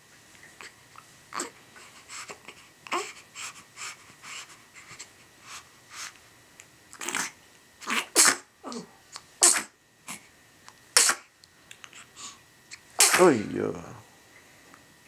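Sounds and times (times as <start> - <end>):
baby sneezing: 7.0 - 10.2, 11.0 - 11.3, 12.7 - 13.4.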